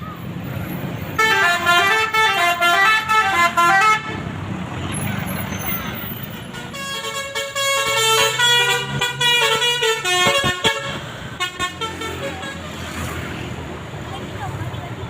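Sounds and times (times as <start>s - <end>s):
bus horn playing a tune: 1.1s - 4.4s, 6.3s - 12.8s.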